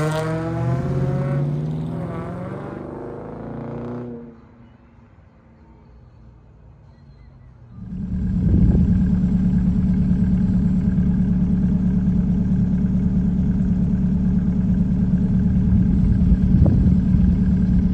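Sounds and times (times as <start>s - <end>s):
car engine idling: 7.8s - 17.9s.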